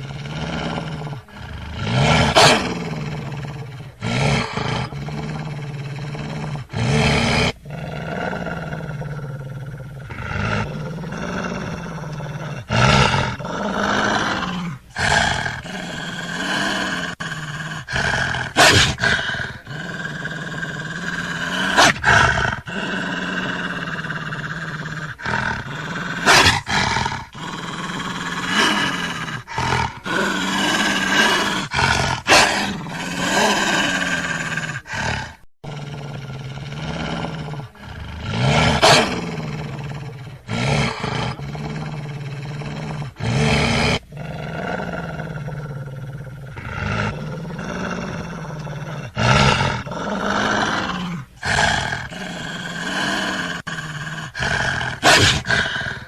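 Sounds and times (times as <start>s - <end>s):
wolf growling: 0.0s - 56.0s.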